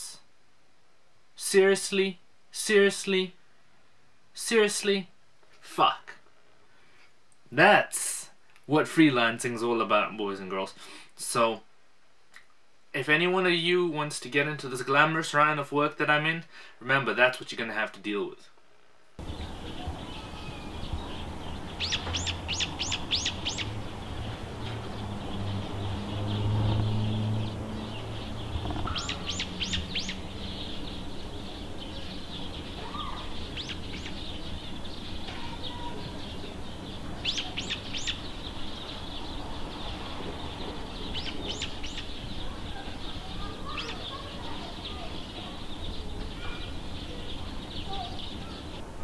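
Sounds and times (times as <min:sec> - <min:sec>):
steady high hiss: 0:00.0 - 0:28.4
bird chirping: 0:19.2 - 0:48.9.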